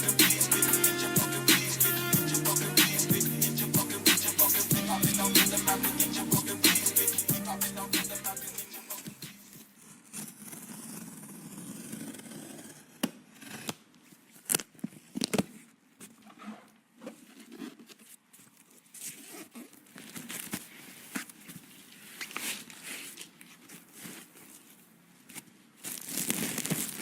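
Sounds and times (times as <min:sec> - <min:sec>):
packaging rustling and scraping: 0:14.2 - 0:27.0.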